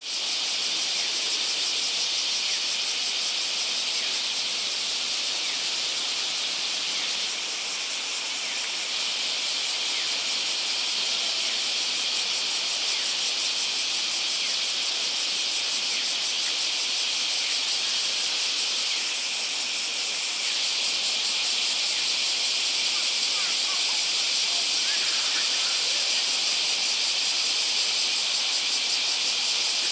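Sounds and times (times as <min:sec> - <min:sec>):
cicadas singing: 0:00.0 - 0:29.9.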